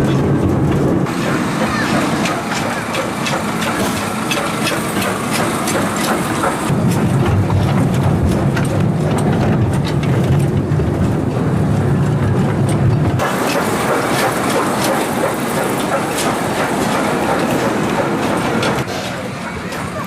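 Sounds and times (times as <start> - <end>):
ride-on locomotive rumble: 0.0 - 20.0.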